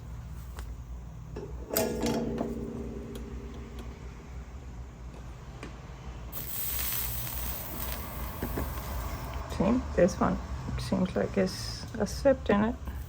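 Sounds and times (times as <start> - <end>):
solder sizzling: 6.3 - 9.4.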